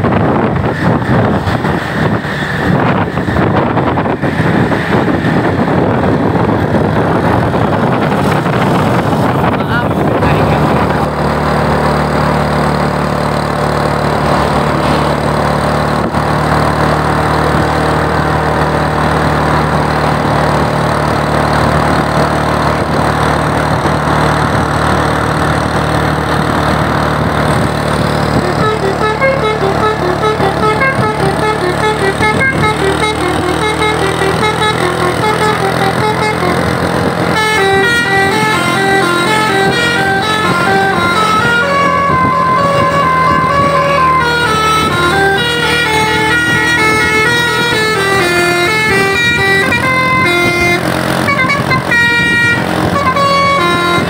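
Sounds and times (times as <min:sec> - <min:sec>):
multi-tone bus horn tune: 0:00.0 - 0:09.3, 0:26.8 - 0:54.0
bus engine humming: 0:00.0 - 0:54.0.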